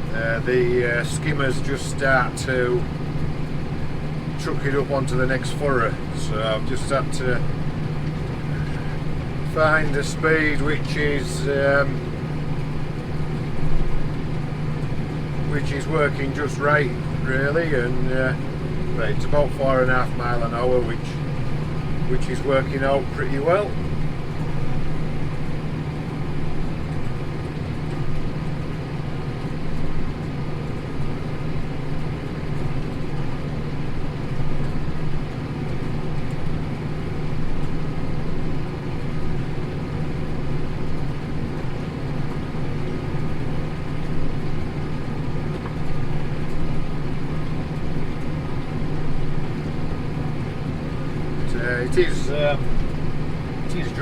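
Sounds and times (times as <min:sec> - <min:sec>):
tractor engine under load: 0:00.0 - 0:54.0.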